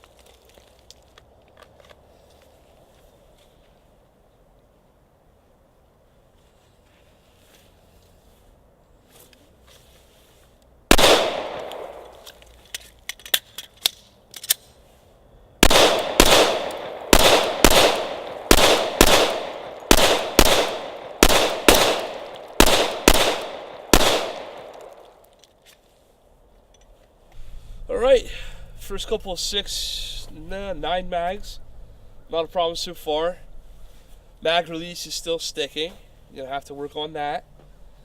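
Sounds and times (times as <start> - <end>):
ringing gunshot echo: 10.9 - 12.2, 15.6 - 24.8
pistol shots: 10.9 - 12.3, 15.6 - 25.1
faint sharp cracks: 10.9 - 14.7, 15.6 - 25.9.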